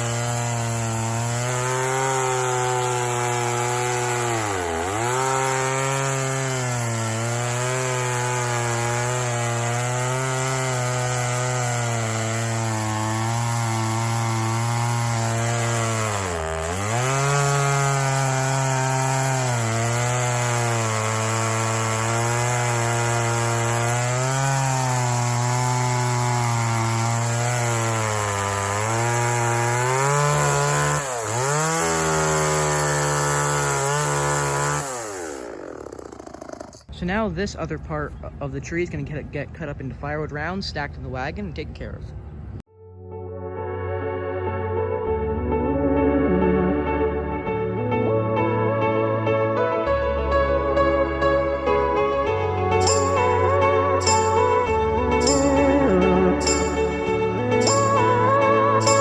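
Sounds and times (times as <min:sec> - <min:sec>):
chainsaw cutting wood: 0:00.0 - 0:36.9, 0:52.3 - 0:59.0.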